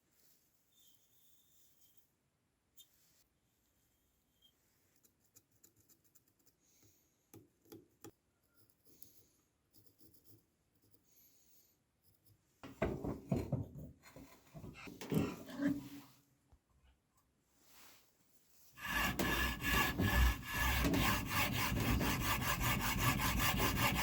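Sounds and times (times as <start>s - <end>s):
loud rough rubbing: 18.8s - 24.0s.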